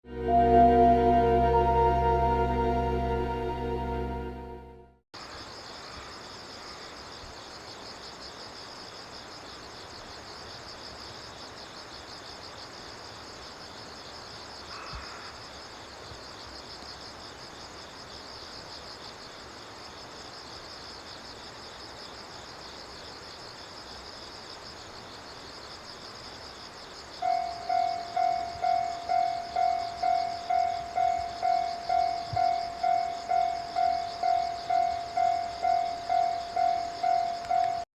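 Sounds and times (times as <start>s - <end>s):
level-crossing warning bell: 0.0s - 4.7s, 27.2s - 37.9s
insects chirring: 5.2s - 37.8s.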